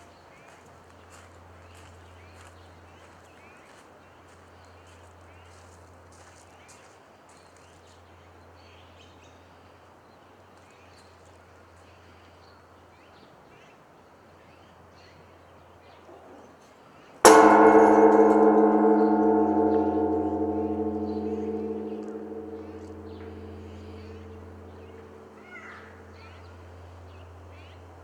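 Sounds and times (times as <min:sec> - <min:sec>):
large temple bell ringing: 0:17.3 - 0:26.4.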